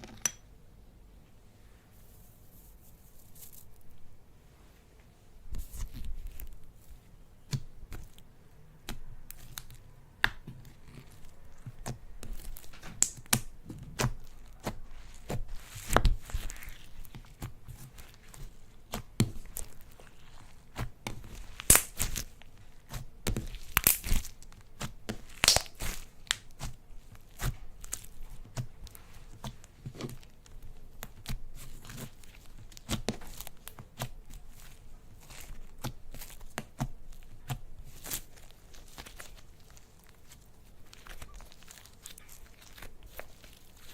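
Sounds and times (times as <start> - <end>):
slime squished by hand: 7.4 - 43.9.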